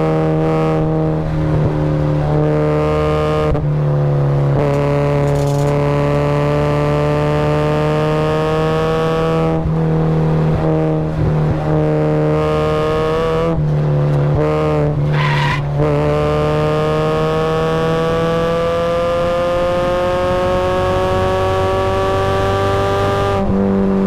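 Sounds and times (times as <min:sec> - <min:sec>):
car engine accelerating: 0:00.0 - 0:24.0
tyres squealing: 0:15.0 - 0:15.8.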